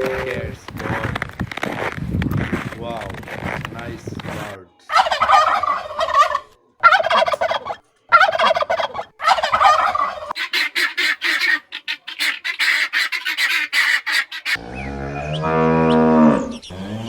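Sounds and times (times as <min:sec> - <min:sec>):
short sharp turkey calls: 0:04.9 - 0:14.6
turkeys gobbling: 0:04.9 - 0:16.8.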